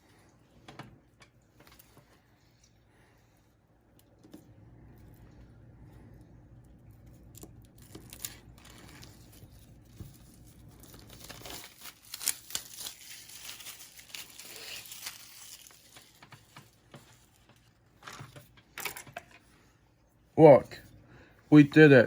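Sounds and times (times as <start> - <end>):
packaging being torn and crinkled: 7.6 - 16.6.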